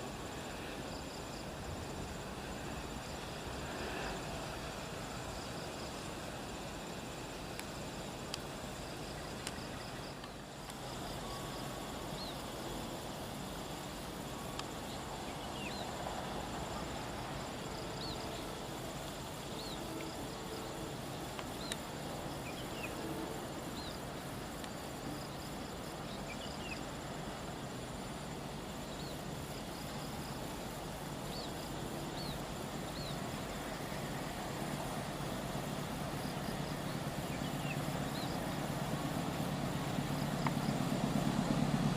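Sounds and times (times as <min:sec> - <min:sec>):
high insect-like whine: 0:00.0 - 0:41.9
steady rushing background: 0:29.4 - 0:41.9.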